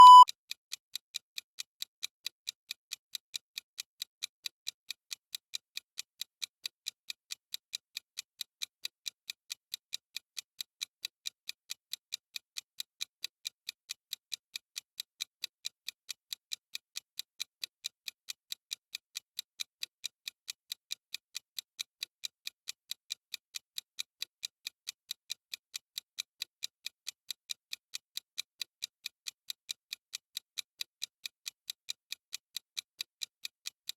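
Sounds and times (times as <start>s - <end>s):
clock ticking: 0.0s - 0.2s.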